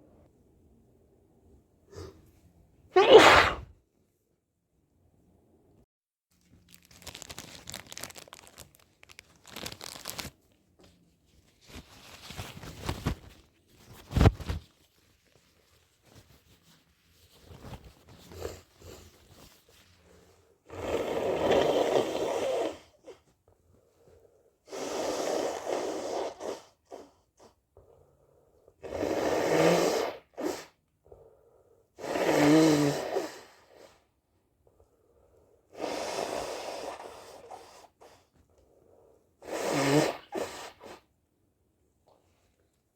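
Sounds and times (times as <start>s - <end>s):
person blowing nose: 3.0s - 3.7s, 20.7s - 22.9s, 24.7s - 27.2s, 28.8s - 30.8s, 32.0s - 33.9s, 35.7s - 38.2s, 39.4s - 41.1s
rustling and crinkling: 6.3s - 20.1s.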